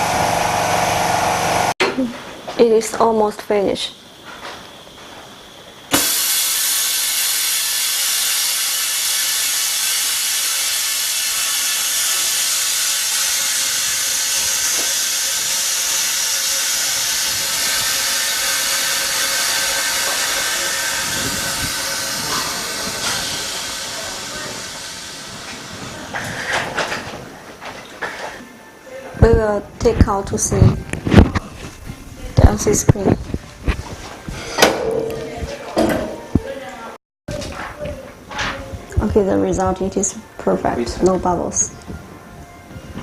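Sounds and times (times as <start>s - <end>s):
compressed air hissing: 5.9s - 26.5s.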